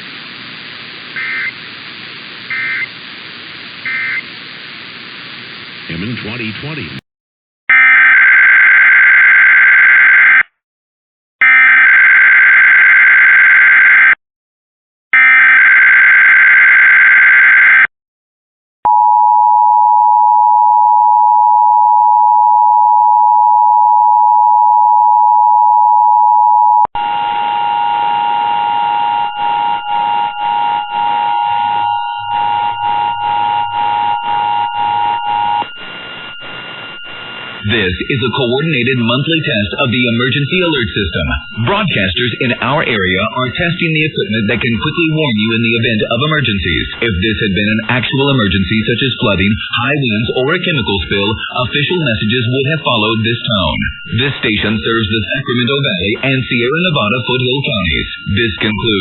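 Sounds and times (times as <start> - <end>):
two-tone attention signal: 26.6 - 42.8
screeching data bursts: 28.7 - 44.9
static hiss and crackle: 31.8 - 39.1.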